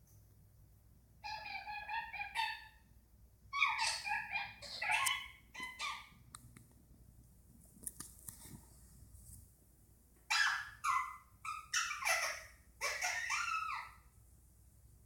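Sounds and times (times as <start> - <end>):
parakeet harsh calls: 1.2 - 2.8, 3.6 - 6.1, 10.3 - 14.0.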